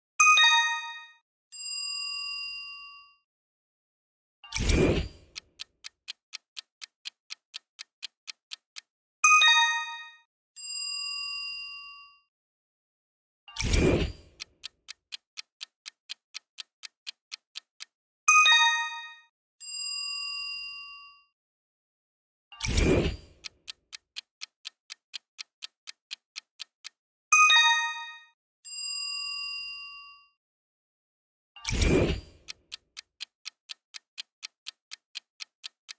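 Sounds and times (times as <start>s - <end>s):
clock ticking quickly: 4.6s - 10.2s, 13.6s - 19.2s, 22.6s - 28.2s, 31.7s - 35.9s
bell tone ringing: 18.5s - 19.1s, 27.5s - 28.2s
bright chime: 18.5s - 19.2s.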